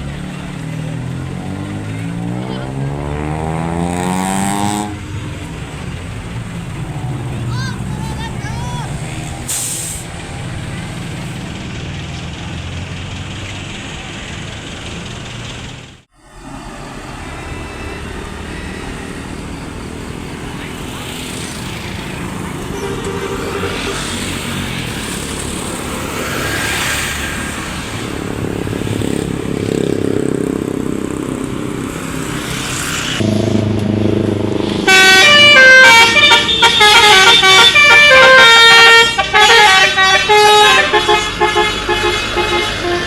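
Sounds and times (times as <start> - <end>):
bus engine running: 0.0 - 43.0.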